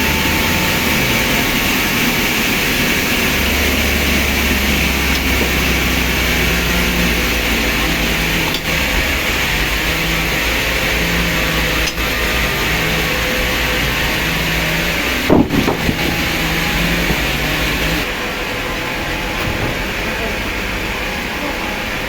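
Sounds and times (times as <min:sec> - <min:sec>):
machine hum and whir: 0:00.0 - 0:22.0
loud knock: 0:15.3 - 0:17.2.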